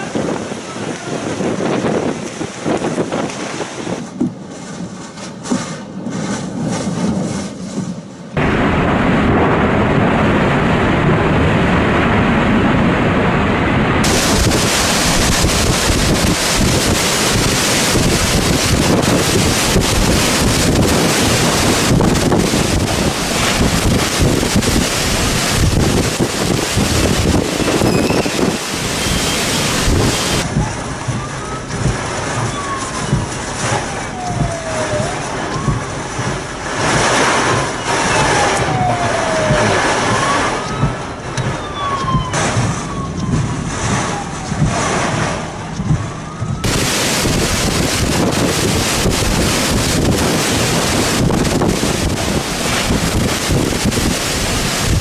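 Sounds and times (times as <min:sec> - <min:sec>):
strong wind buffeting microphone: 0:00.0 - 0:55.0
higher hiss: 0:14.1 - 0:17.7.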